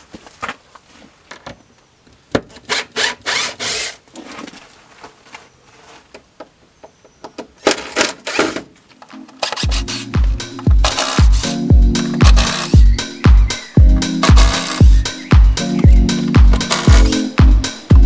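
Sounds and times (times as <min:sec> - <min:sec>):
hand tools scraping metal: 0:09.0 - 0:17.9.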